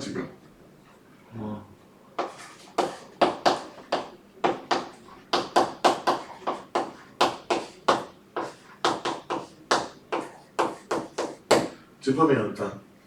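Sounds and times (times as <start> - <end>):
writing taps on board: 2.2 - 11.8.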